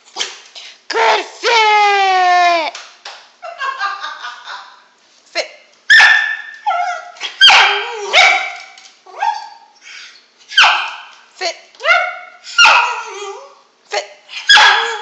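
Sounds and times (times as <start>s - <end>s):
dog barking: 5.9s - 6.5s, 7.4s - 8.6s, 10.6s - 11.1s, 11.8s - 13.1s, 14.4s - 15.0s.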